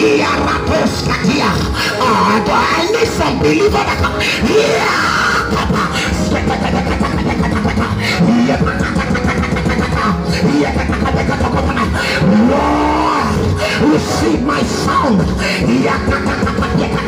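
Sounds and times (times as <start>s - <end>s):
congregation praying aloud: 0.0s - 17.0s
music playing: 0.0s - 17.0s
person's voice rising and falling: 11.9s - 16.9s.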